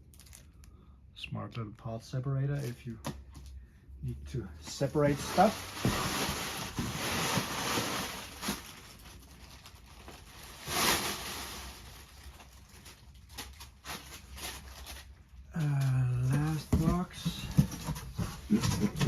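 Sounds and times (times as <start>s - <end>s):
packaging rustling: 4.8s - 19.0s.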